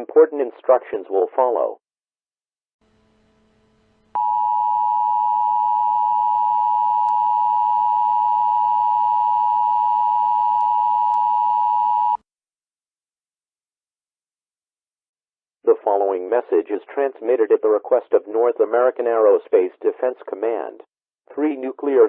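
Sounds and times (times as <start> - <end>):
two-tone electronic alert signal: 4.2 - 12.2.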